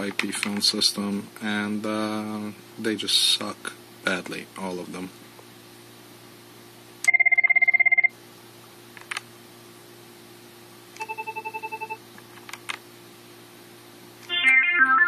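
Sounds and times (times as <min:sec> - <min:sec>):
phone ringtone trill: 0:14.3 - 0:15.0.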